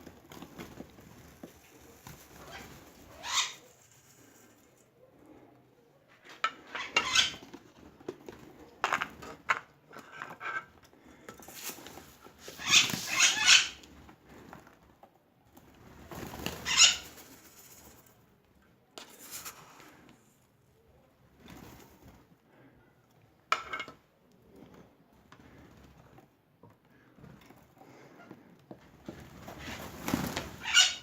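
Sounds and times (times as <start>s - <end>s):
birds' wings flapping: 15.7s - 18.0s, 29.2s - 31.0s.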